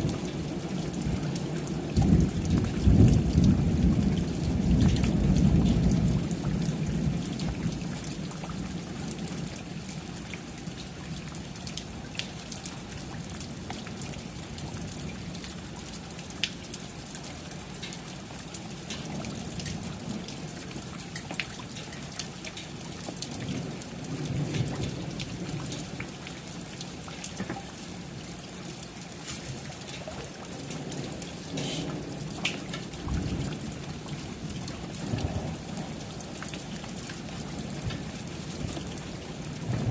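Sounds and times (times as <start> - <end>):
thunder rumble: 0.0 - 7.8, 30.6 - 36.2, 37.5 - 39.9
rain drops on hard surface: 0.0 - 39.9.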